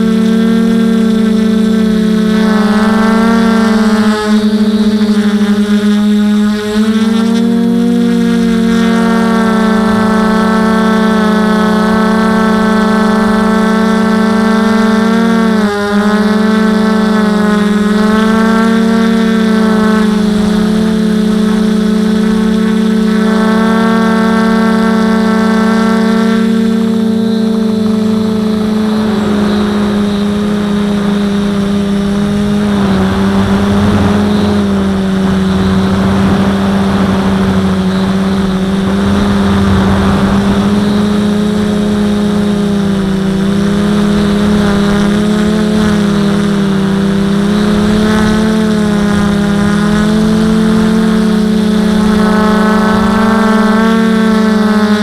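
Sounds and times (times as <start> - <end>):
drone propellers droning: 0.0 - 55.0
rough rushing noise: 24.8 - 55.0.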